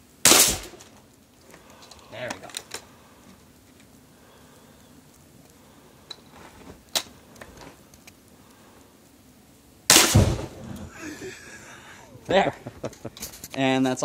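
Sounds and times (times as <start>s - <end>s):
loud gunshot: 0.2s - 0.8s, 9.9s - 10.7s.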